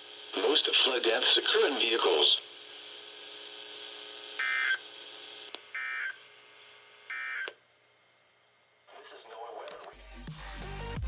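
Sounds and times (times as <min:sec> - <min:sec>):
faint radio hiss: 0:00.1 - 0:05.5, 0:08.8 - 0:10.0.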